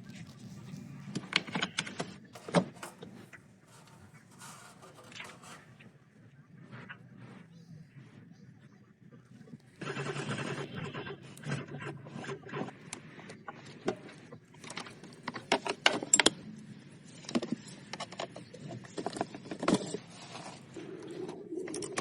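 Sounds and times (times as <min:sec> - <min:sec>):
clicks and knocks of hand work: 0:01.1 - 0:05.9.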